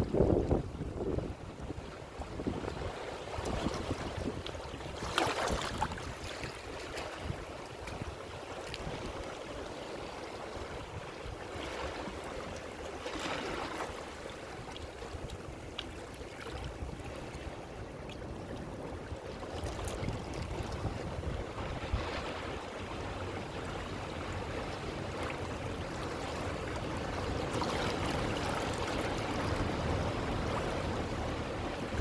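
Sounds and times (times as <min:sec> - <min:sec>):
wind on microphone: 0:00.0 - 0:09.4, 0:14.4 - 0:23.2, 0:25.9 - 0:32.0
ocean waves breaking on shore: 0:00.0 - 0:32.0.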